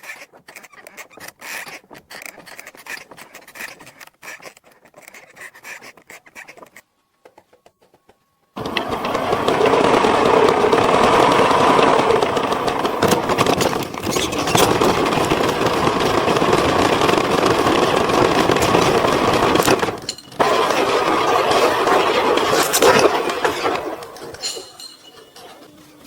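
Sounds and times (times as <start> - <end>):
motor running: 8.6 - 24.7.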